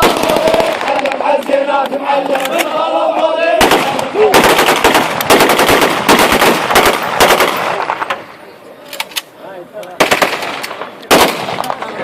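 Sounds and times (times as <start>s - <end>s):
automatic gunfire: 0.0s - 1.1s, 3.6s - 8.0s, 10.0s - 11.8s
voices: 0.0s - 4.4s, 7.6s - 12.0s.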